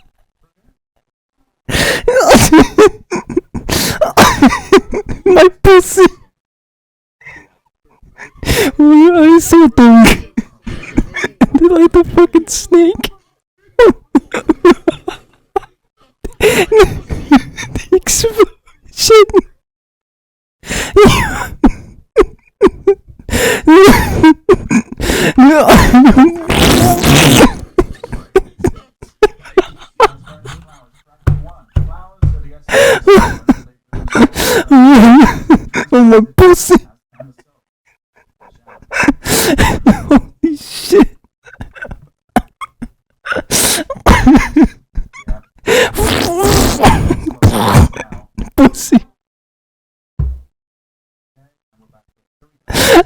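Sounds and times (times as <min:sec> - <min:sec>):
person gasping for breath: 0:01.7 - 0:02.1, 0:20.6 - 0:22.0, 0:23.3 - 0:25.4, 0:32.7 - 0:35.9, 0:45.6 - 0:46.0
person laughing uncontrollably: 0:02.1 - 0:05.6, 0:21.0 - 0:31.5, 0:32.7 - 0:36.7, 0:41.6 - 0:48.8.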